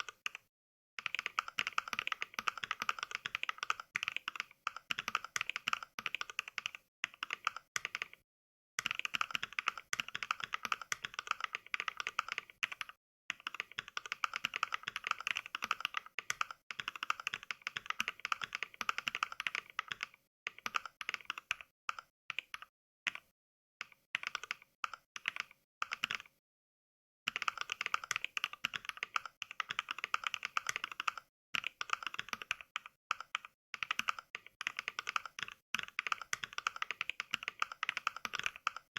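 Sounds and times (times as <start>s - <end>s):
mechanical keyboard typing clicks: 0.0s - 0.4s, 1.0s - 8.2s, 8.8s - 26.3s, 27.3s - 38.9s.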